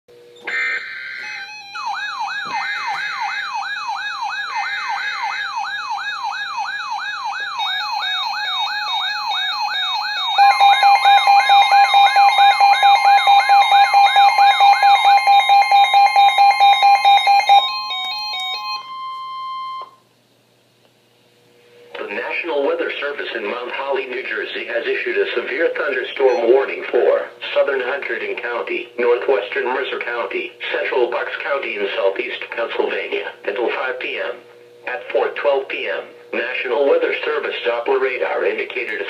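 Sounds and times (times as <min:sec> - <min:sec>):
stepped electronic tones: 0:00.3 - 0:18.8
screechy data bursts: 0:00.4 - 0:03.5
rising siren-like sweep: 0:00.5 - 0:13.6.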